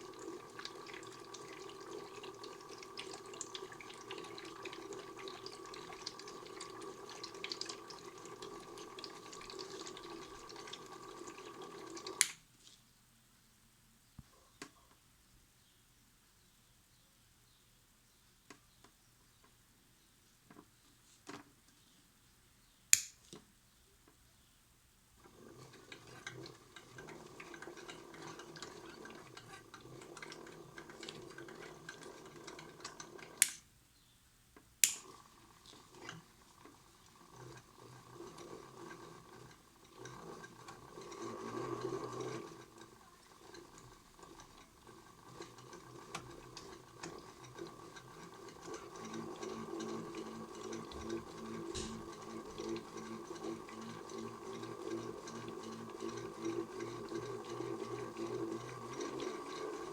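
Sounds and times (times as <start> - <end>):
toy washing machine motor hum: 0.0 - 12.4, 25.2 - 33.6, 34.8 - 59.9
sharp clicks: 22.9 - 23.3, 33.4 - 33.6, 34.8 - 35.1.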